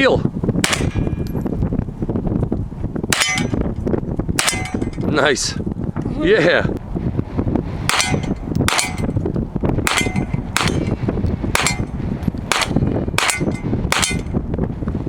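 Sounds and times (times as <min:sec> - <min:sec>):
gunshots: 0:00.6 - 0:01.2, 0:03.1 - 0:03.6, 0:04.4 - 0:04.9, 0:07.9 - 0:09.1, 0:09.8 - 0:10.9, 0:11.6 - 0:11.9, 0:12.5 - 0:14.3
steel target clanging: 0:00.6 - 0:01.5, 0:03.1 - 0:03.8, 0:04.4 - 0:05.2, 0:07.9 - 0:09.2, 0:09.9 - 0:11.0, 0:11.6 - 0:14.4.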